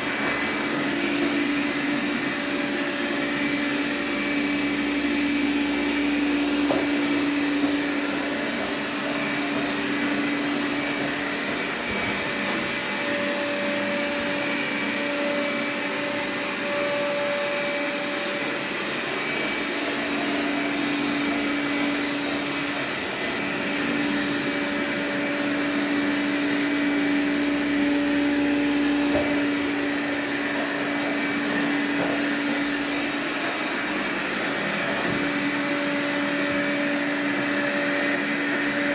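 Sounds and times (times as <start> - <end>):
robot vacuum whirring: 0.0 - 38.9.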